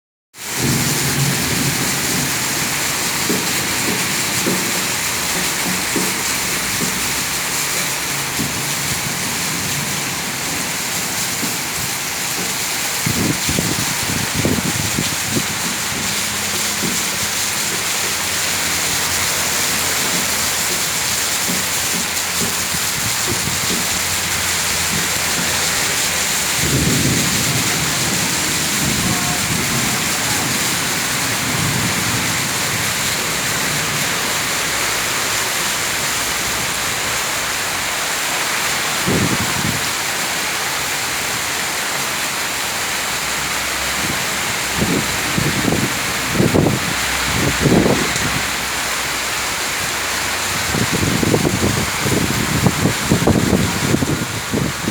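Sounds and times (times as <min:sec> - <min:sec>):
heavy rain: 0:00.3 - 0:54.9
low rumbles: 0:05.2 - 0:37.0.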